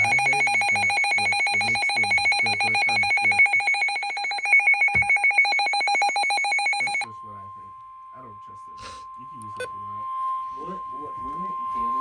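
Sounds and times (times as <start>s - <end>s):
rapidly pulsing electronic alert tone: 0.0s - 7.1s.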